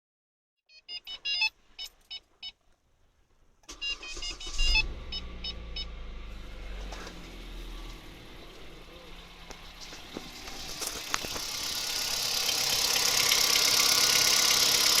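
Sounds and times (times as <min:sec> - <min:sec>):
car engine cranking and idling: 0:01.2 - 0:15.0
dashboard chime beeps: 0:03.7 - 0:06.0.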